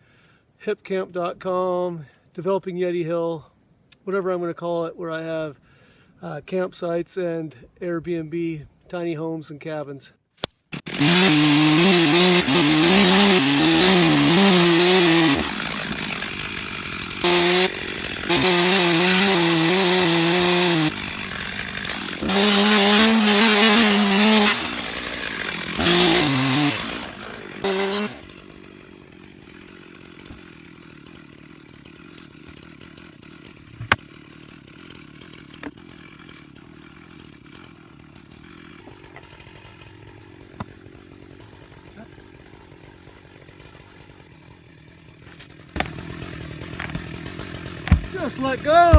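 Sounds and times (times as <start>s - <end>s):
chainsaw cutting log: 10.4s - 48.9s.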